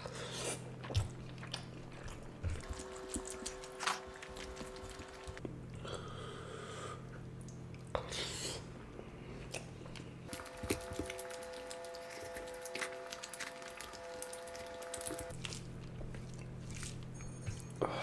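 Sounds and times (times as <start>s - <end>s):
steady background hum: 0.0s - 18.0s
chewing and wet squishing: 0.4s - 5.6s, 9.4s - 17.8s.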